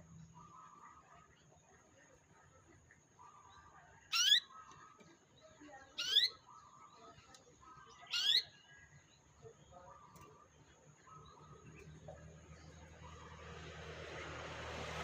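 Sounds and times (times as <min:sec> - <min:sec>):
canary chirping: 0:03.5 - 0:04.9, 0:05.9 - 0:06.7, 0:07.9 - 0:09.3.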